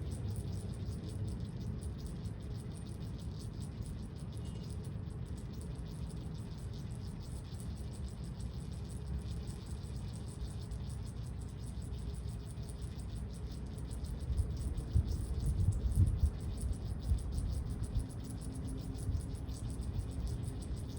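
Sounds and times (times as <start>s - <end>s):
insects chirping: 0.0s - 20.9s
steady low rumble: 14.0s - 20.9s.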